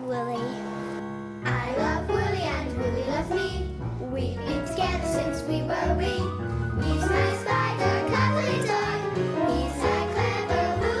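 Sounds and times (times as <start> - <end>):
child singing: 0.0 - 0.6, 1.4 - 11.0
bouncy music with bass line: 3.0 - 11.0.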